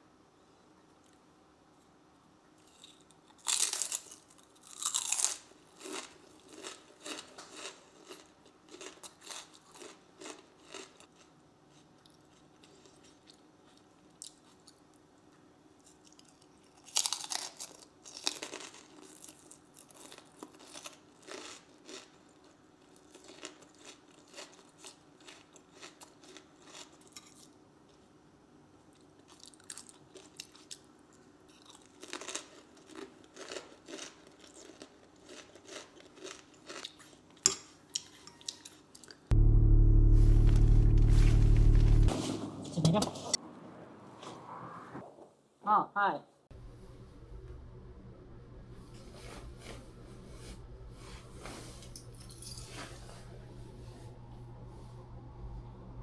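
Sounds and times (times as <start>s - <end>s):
child chewing crunchy food: 2.6s - 15.1s, 15.7s - 28.2s, 28.8s - 39.3s.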